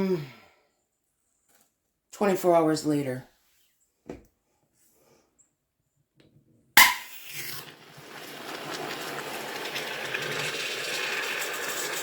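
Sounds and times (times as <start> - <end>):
bottle bursting open with a pop: 6.8 - 7.6
hiss of foam gushing: 7.0 - 12.0.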